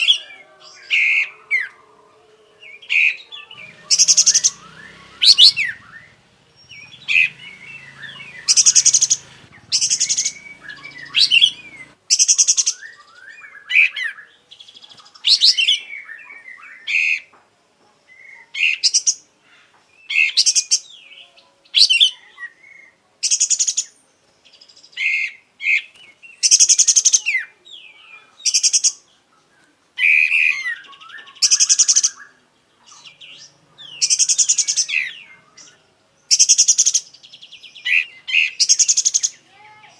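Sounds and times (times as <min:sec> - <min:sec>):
bulbul singing: 0:00.0 - 0:17.3, 0:18.1 - 0:29.2, 0:30.0 - 0:39.9.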